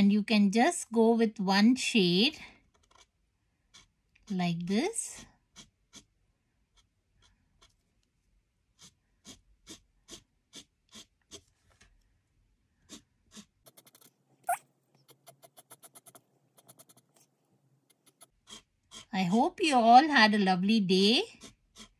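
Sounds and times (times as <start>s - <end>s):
marker pen scratching paper: 2.7s - 4.4s, 5.3s - 12.0s, 12.7s - 19.5s, 21.2s - 21.9s
marker squeak: 12.9s - 17.2s.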